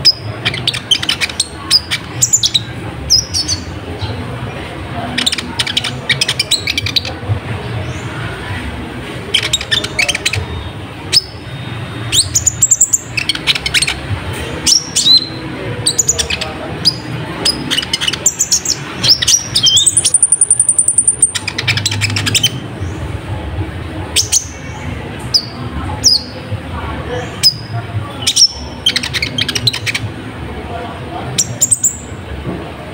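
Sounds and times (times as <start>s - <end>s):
bird singing: 0.0s - 8.4s, 9.2s - 23.3s, 24.0s - 30.1s, 31.3s - 32.1s.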